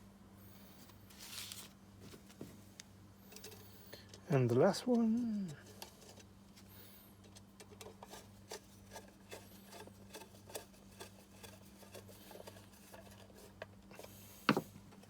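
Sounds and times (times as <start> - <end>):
electrical hum: 0.0 - 15.0
small clicks and scrapes: 0.6 - 15.0.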